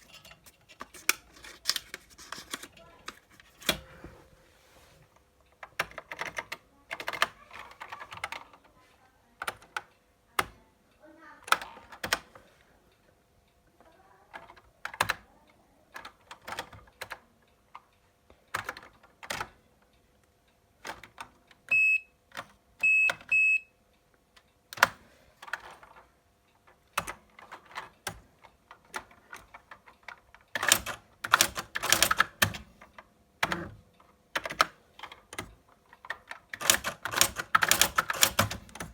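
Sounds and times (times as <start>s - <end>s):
typewriter keystrokes: 28.8s - 38.9s.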